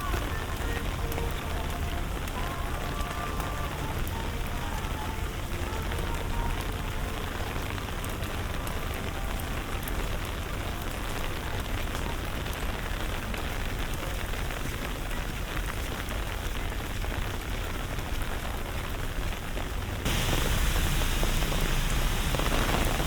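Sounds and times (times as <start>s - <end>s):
rain on hard surfaces: 0.0s - 23.0s
low steady rumble: 20.1s - 23.0s.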